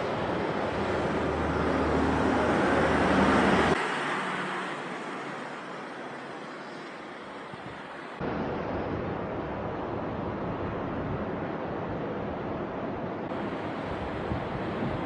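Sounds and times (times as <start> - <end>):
motorcycle engine and road noise: 0.0 - 8.7
wind buffeting microphone: 7.4 - 15.0.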